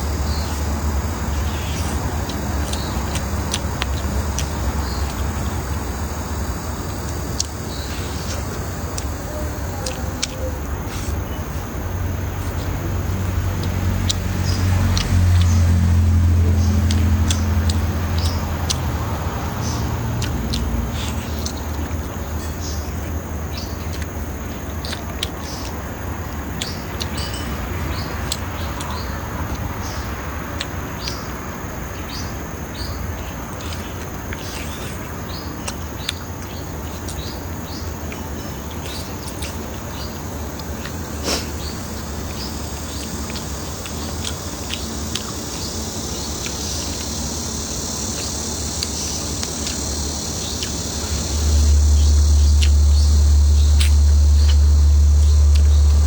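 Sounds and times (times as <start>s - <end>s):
steady low hum: 0.0s - 56.0s
high insect-like drone: 41.0s - 56.0s.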